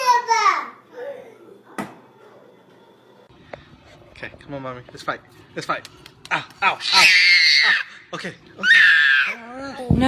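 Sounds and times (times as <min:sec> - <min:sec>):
child's voice: 0:00.0 - 0:01.5.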